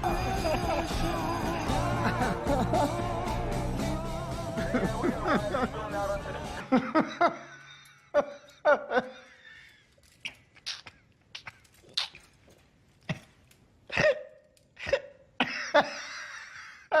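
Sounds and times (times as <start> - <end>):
person coughing: 13.1 - 16.3.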